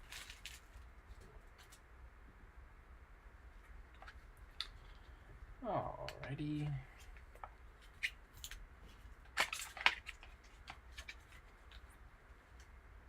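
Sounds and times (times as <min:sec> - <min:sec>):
packaging clicks and crinkles: 0:00.0 - 0:01.8, 0:06.6 - 0:12.0.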